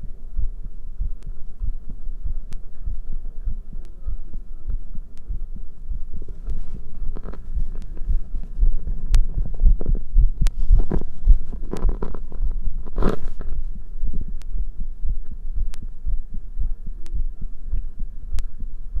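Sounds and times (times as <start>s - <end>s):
heartbeat thuds: 0.0s - 19.0s
rustling noise: 6.2s - 14.3s.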